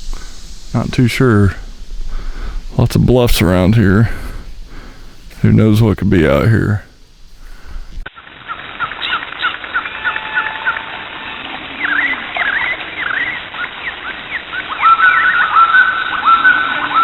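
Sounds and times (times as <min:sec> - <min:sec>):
birds chirping: 0:00.0 - 0:17.0
steady background hiss: 0:00.0 - 0:17.0
bird call rising then level: 0:08.5 - 0:17.0.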